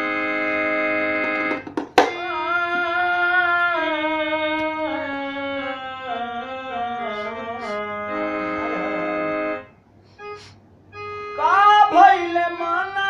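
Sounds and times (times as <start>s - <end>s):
organ-like keyboard chords: 0.0s - 13.0s
sharp percussive hit: 1.5s - 2.2s.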